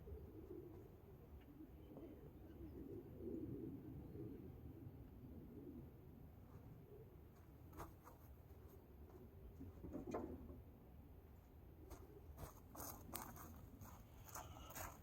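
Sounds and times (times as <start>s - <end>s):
scratchy rustles: 12.4s - 15.0s.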